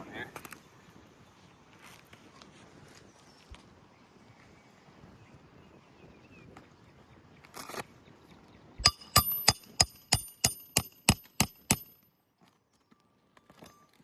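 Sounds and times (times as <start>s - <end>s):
hammer striking nail: 8.8s - 12.0s.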